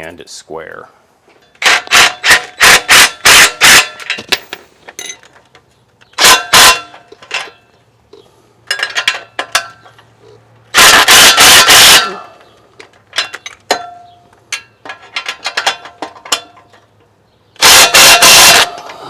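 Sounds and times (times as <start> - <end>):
ratchet strap ratcheting: 1.6 - 4.6.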